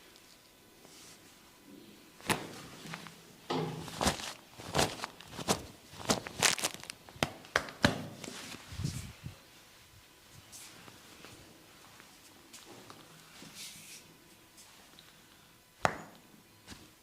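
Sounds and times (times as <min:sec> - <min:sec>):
hands slapping during massage: 0:02.2 - 0:02.6, 0:07.2 - 0:08.4.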